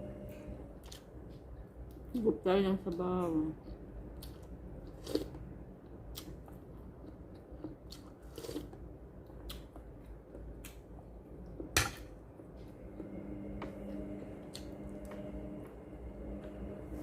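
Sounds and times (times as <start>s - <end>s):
chewing and biting: 3.7s - 11.0s.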